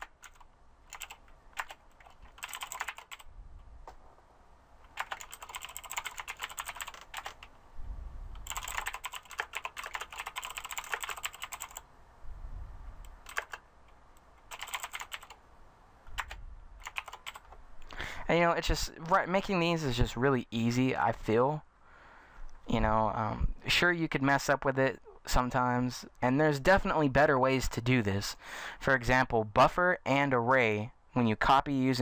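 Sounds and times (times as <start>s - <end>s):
typing on computer keyboard: 0.0s - 3.3s, 4.9s - 7.5s, 8.4s - 11.8s, 13.2s - 13.6s, 14.5s - 15.4s, 16.1s - 17.5s.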